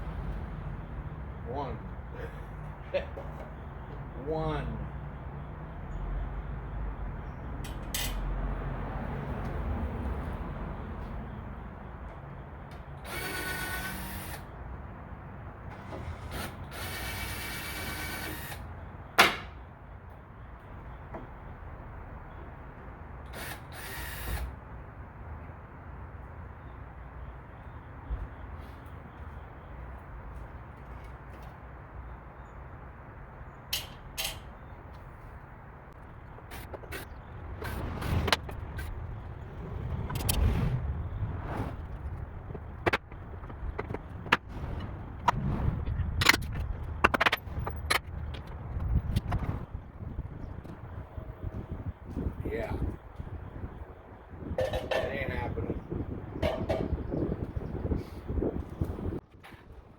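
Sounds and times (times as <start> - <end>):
low rumble: 37.1 - 51.9.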